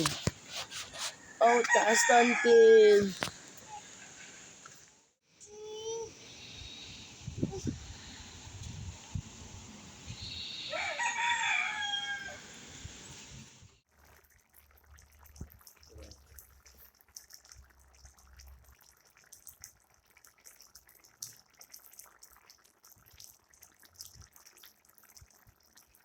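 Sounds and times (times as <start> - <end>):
rooster crowing: 1.1 - 2.9, 10.6 - 12.6.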